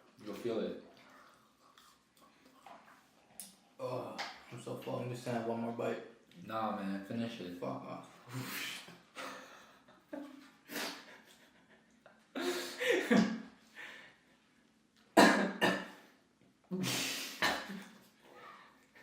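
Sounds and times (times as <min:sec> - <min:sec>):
person coughing: 0:15.2 - 0:16.0, 0:17.4 - 0:17.9.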